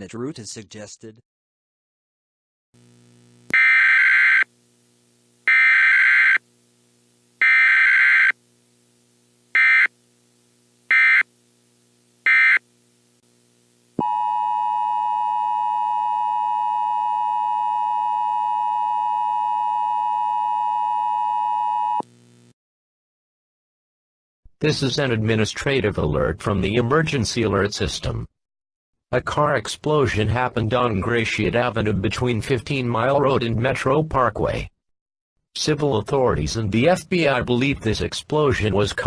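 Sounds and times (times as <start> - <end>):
buzzing data bursts: 2.8 - 4.5, 7.4 - 8.4, 10.9 - 11.3, 12.2 - 12.6.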